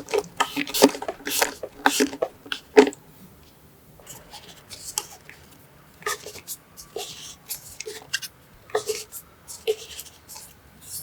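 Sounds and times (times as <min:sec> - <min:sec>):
small objects clicking and scraping: 0:00.0 - 0:03.0.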